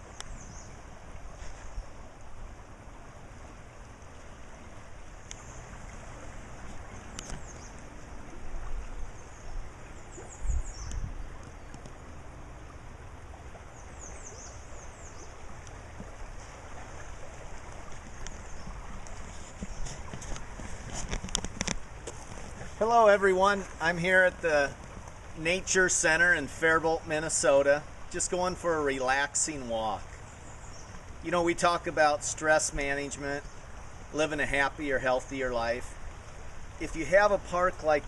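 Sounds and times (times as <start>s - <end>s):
flowing stream: 0.0s - 38.0s
wind gusts on microphone: 5.6s - 11.7s.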